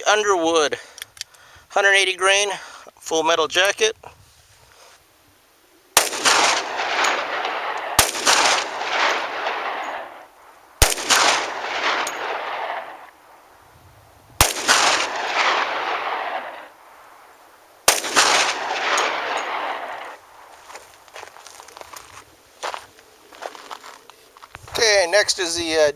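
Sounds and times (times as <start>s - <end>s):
pistol shots with echo: 6.0s - 13.4s, 14.4s - 20.3s.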